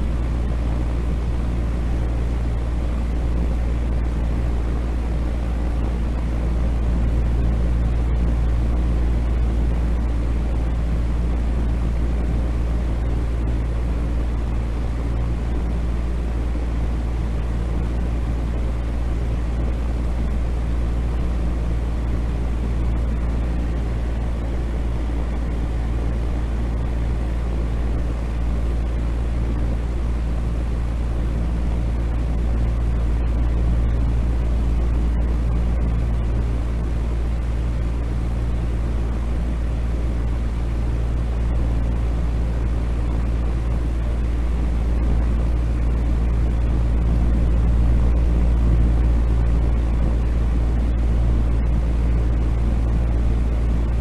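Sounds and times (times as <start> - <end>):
faint low hum: 0.0 - 54.0
steady deep rumbling noise: 0.0 - 54.0.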